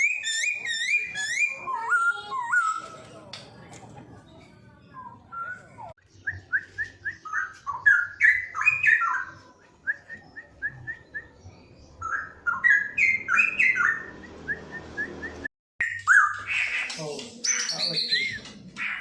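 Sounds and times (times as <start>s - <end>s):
bird singing whistled notes: 0.0s - 3.0s, 4.9s - 16.4s.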